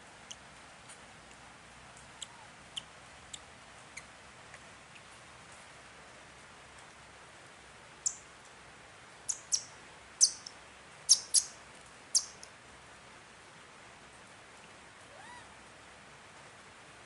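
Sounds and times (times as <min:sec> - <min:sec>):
small animal chirping: 0:02.0 - 0:04.2, 0:08.0 - 0:08.2, 0:09.3 - 0:10.5, 0:11.1 - 0:12.5.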